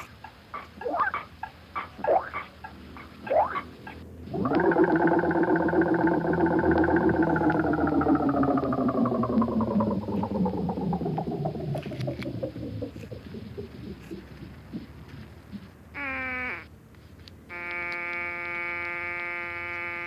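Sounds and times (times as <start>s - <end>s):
engine-like drone winding down: 3.6s - 15.6s.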